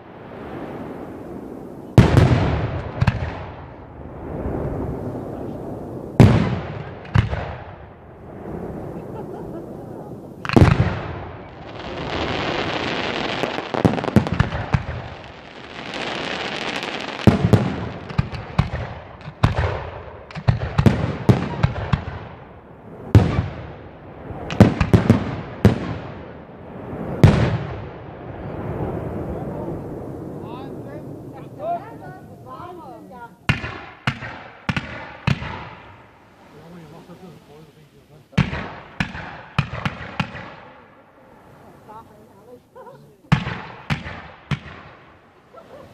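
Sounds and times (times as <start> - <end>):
fireworks bangs: 0.0 - 45.9
fireworks hissing: 8.2 - 18.7, 35.4 - 39.0.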